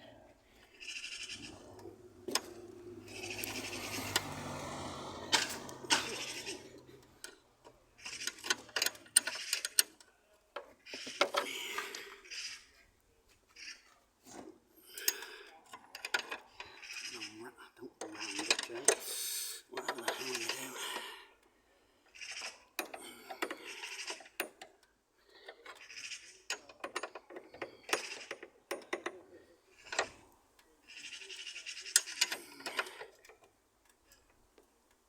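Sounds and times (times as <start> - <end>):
metallic clicks and clanks: 5.3 - 11.9.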